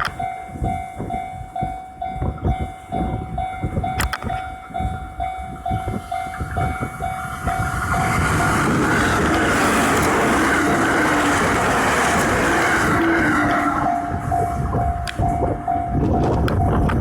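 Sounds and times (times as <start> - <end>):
train wheels knocking on rails: 0.0 - 17.0
level crossing bell ringing: 0.1 - 8.2, 13.3 - 17.0
steady rushing noise: 5.6 - 17.0.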